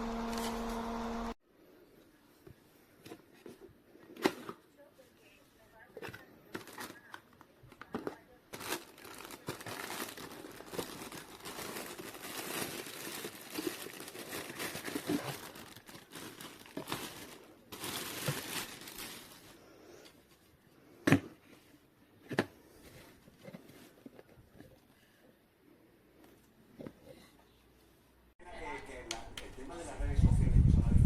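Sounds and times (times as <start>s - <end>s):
plastic packaging crinkling: 6.6s - 19.6s.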